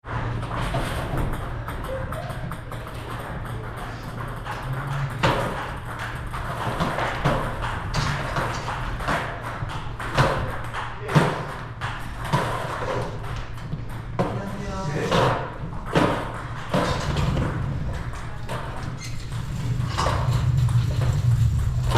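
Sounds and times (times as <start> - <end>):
faint clicks from other tables: 0.3 - 21.9.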